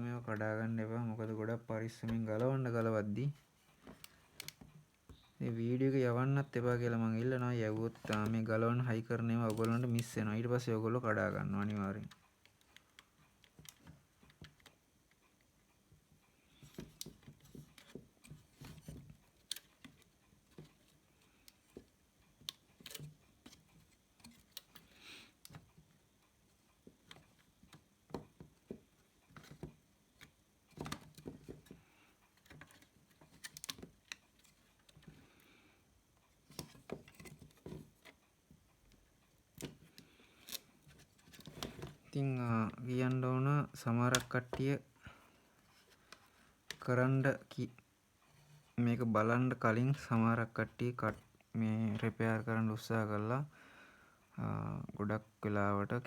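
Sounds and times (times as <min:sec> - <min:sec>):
small parts clicking and tapping: 0:11.1 - 0:15.7, 0:16.4 - 0:41.8.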